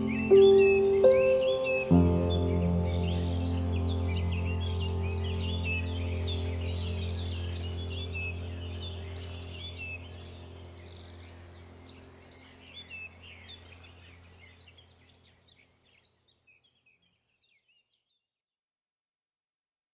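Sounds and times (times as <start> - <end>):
small birds chirping: 0.0 - 18.2
steady low hum: 2.0 - 15.2.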